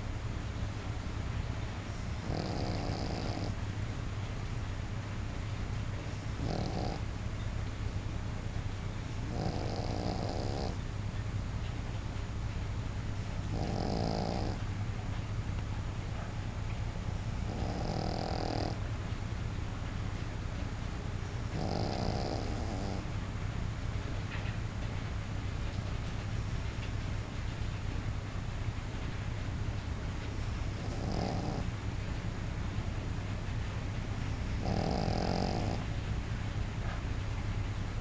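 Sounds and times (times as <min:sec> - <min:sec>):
steady low hum: 0:00.0 - 0:38.0
dog snoring: 0:02.0 - 0:03.6, 0:06.3 - 0:07.1, 0:09.2 - 0:10.8, 0:13.5 - 0:14.6, 0:17.4 - 0:18.8, 0:21.5 - 0:23.1, 0:30.6 - 0:31.7, 0:34.5 - 0:35.9.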